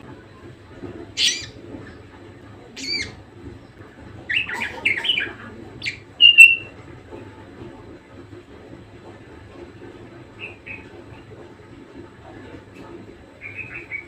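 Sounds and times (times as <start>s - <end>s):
budgerigar chirping: 1.2s - 1.5s, 4.3s - 6.7s.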